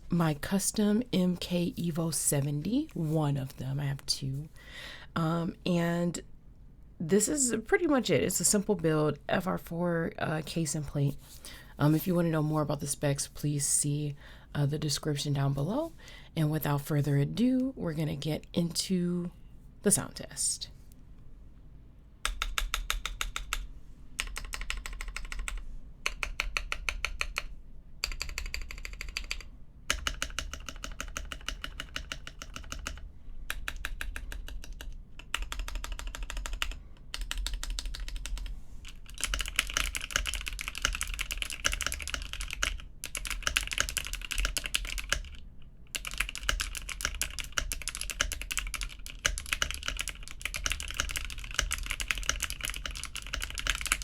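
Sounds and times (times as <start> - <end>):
mechanical keyboard typing: 22.3 - 54.0.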